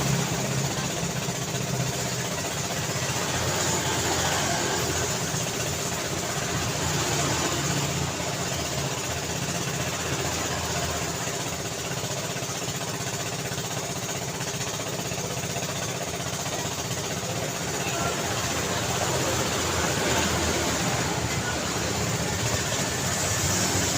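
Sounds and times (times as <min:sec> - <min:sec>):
road noise: 0:00.0 - 0:01.0, 0:02.8 - 0:11.4, 0:16.6 - 0:23.9
motorbike engines: 0:00.0 - 0:23.9
car engines passing: 0:17.8 - 0:23.9.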